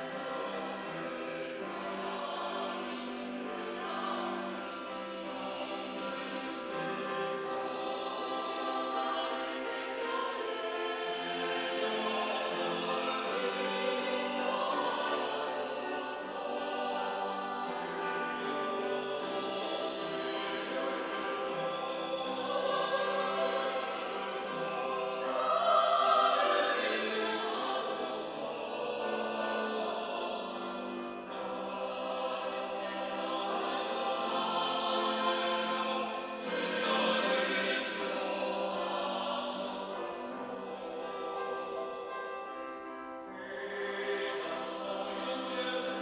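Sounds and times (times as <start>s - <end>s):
choir singing in parts: 0.0s - 46.0s.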